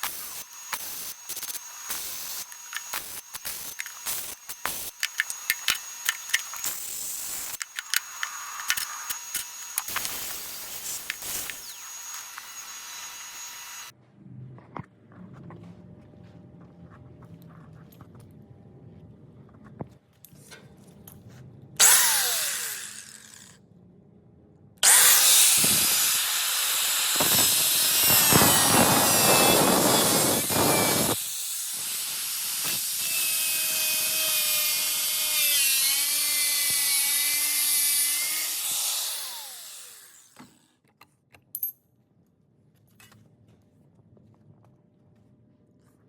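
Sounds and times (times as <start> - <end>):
power tool whining: 0.0 - 13.9, 21.8 - 23.6, 24.8 - 40.6.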